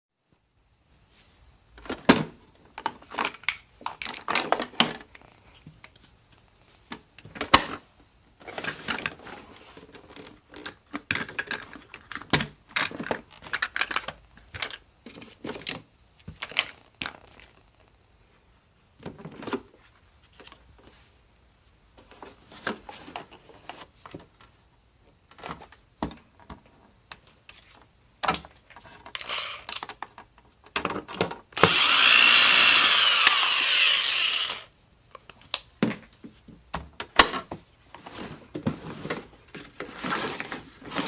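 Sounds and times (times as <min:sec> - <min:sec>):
plastic parts clicking and knocking: 0:01.8 - 0:05.9, 0:08.5 - 0:17.7, 0:28.2 - 0:37.6.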